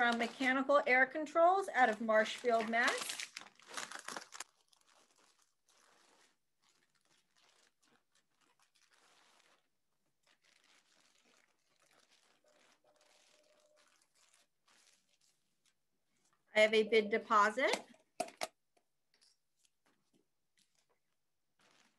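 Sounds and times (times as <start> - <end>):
paper rustling and crinkling: 1.4 - 16.3.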